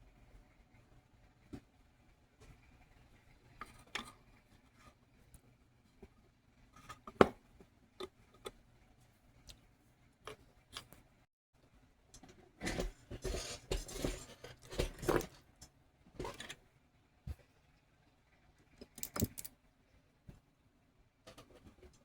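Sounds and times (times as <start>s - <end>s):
scraping and rustling: 12.5s - 15.6s
metal tools clicking and tapping: 18.8s - 19.5s.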